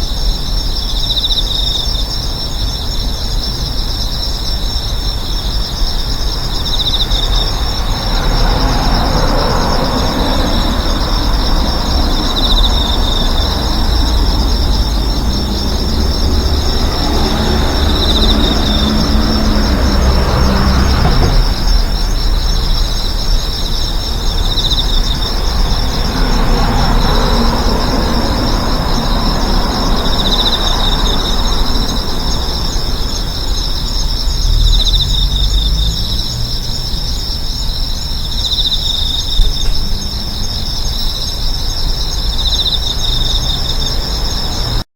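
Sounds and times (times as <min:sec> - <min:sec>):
insects chirring: 0:00.0 - 0:44.8
vehicles passing by: 0:05.0 - 0:44.9.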